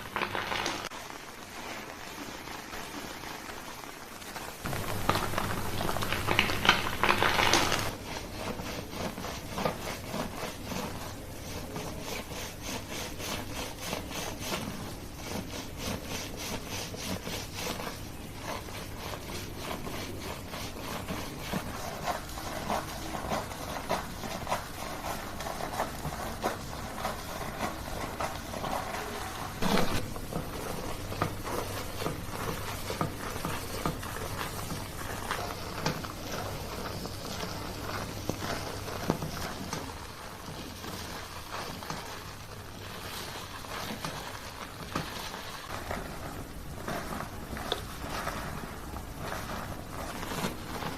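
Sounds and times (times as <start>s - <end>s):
hands rubbing hair: 4.6s - 40.0s.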